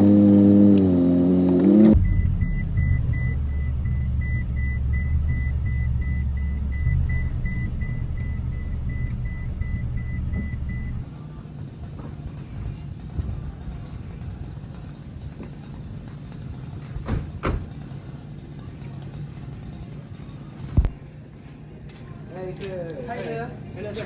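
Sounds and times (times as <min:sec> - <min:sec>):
car engine rumbling: 0:00.0 - 0:21.0
electronic warning beeps: 0:01.7 - 0:11.0.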